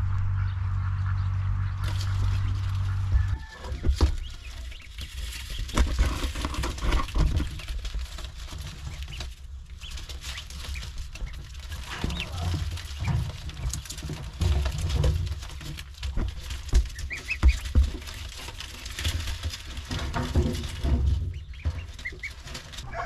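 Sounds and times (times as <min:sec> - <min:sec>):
poultry clucking: 0:00.0 - 0:07.8, 0:08.6 - 0:23.0
low rumble: 0:00.0 - 0:09.9
small taps and rustles: 0:03.2 - 0:22.8.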